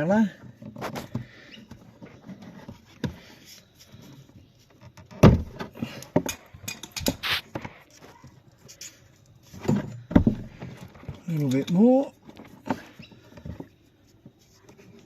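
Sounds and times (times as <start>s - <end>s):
tools and cable clicking: 5.8s - 7.3s.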